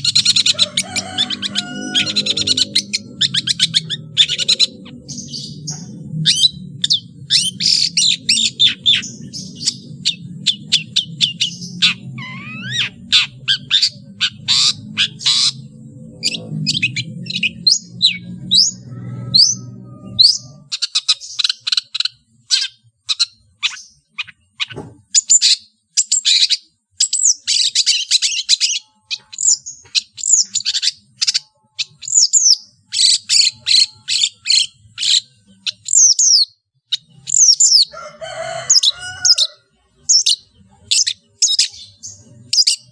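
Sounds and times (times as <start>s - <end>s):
bird singing chirps and whistles: 0.0s - 37.9s.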